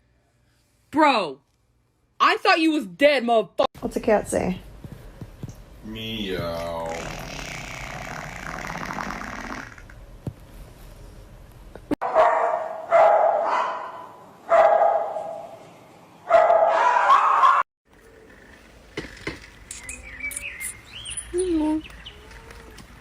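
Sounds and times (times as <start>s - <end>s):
dog barking loudly: 12.0s - 15.6s, 16.3s - 17.6s.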